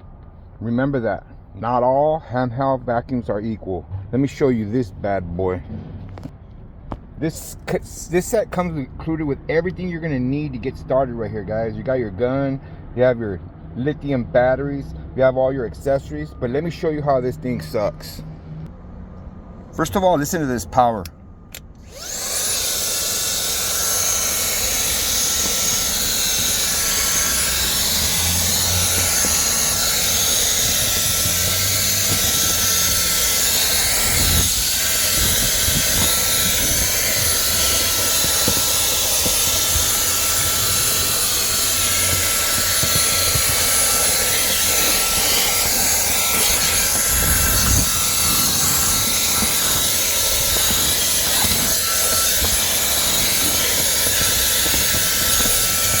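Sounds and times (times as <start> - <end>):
handheld vacuum running: 21.6 - 56.0.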